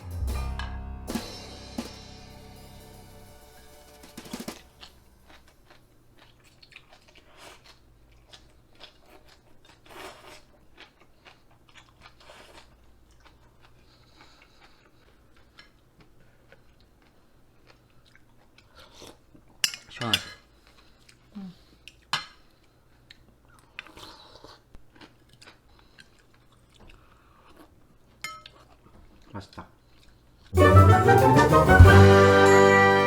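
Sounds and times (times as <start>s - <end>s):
person chewing noodles: 5.3s - 19.6s, 20.5s - 30.5s.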